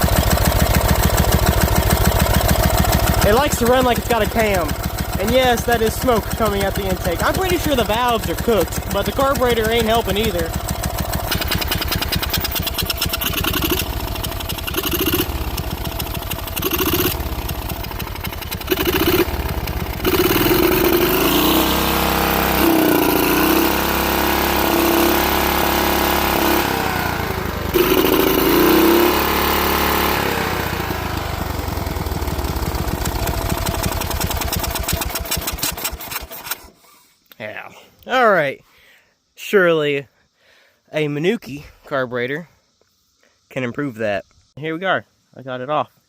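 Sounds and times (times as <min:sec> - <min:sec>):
small lawnmower engine running rough: 0:00.0 - 0:36.8.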